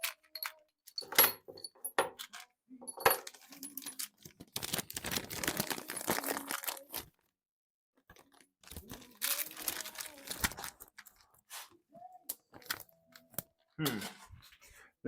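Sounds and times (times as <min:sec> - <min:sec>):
metal tools clinking and rattling: 0:00.0 - 0:04.4.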